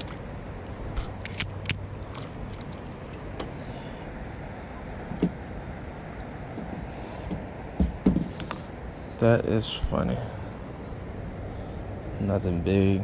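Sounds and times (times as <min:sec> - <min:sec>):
steady hiss: 0:00.0 - 0:13.0
sharp clicks: 0:00.9 - 0:02.7
dull knock: 0:07.8 - 0:08.3.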